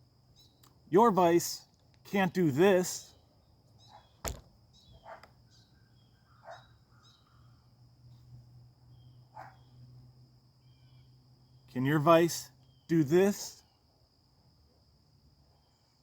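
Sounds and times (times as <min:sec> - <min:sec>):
high insect trill: 0:00.0 - 0:16.0
bird chirps: 0:00.3 - 0:00.8, 0:03.0 - 0:08.2, 0:08.8 - 0:10.0, 0:10.6 - 0:13.9.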